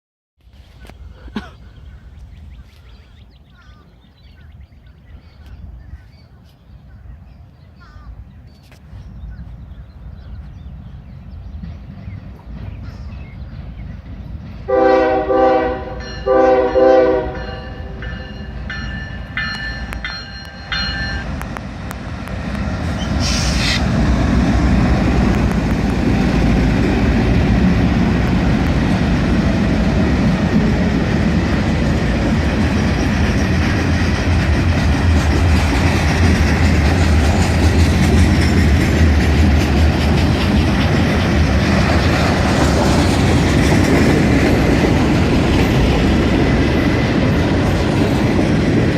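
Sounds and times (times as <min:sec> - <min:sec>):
train engines rumbling: 0:00.5 - 0:48.9
locomotive air horn blasts: 0:14.7 - 0:18.0, 0:23.2 - 0:23.8.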